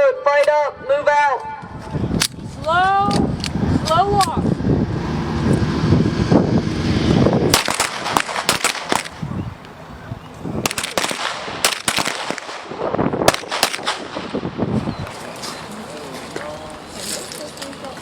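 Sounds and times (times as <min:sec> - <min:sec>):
dense low rumble: 0:01.6 - 0:18.0
pistol shots: 0:07.5 - 0:09.2, 0:10.6 - 0:14.4.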